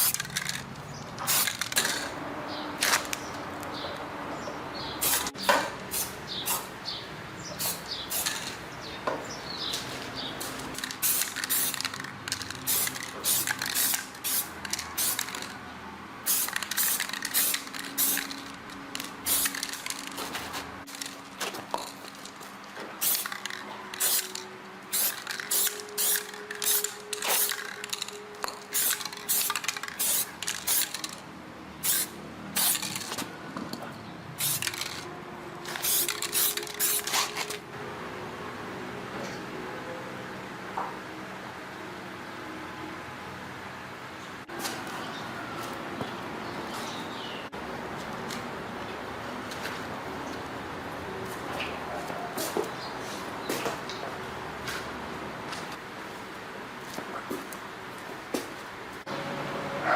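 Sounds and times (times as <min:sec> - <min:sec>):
short hissing spray bursts: 0:01.3 - 0:01.7, 0:05.0 - 0:05.3, 0:05.9 - 0:06.7, 0:07.6 - 0:08.5, 0:10.4 - 0:12.0, 0:12.7 - 0:15.5, 0:24.0 - 0:27.6, 0:31.8 - 0:32.9, 0:34.4 - 0:34.9, 0:35.8 - 0:37.2.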